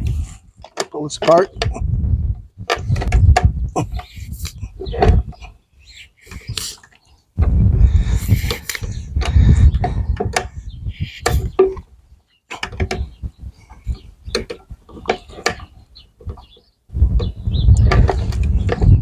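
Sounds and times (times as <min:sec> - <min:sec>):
wooden chair parts knocking and creaking: 0:00.0 - 0:05.6, 0:07.4 - 0:11.9, 0:12.5 - 0:19.0
low rumble: 0:01.5 - 0:05.3, 0:07.4 - 0:11.1.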